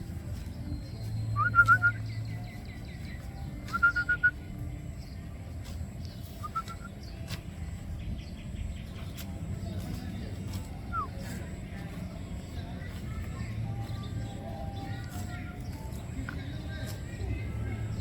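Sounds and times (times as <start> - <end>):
steady low rumble: 0.0 - 3.7
bird whistling calls: 0.8 - 4.5, 6.2 - 7.2, 10.8 - 11.2.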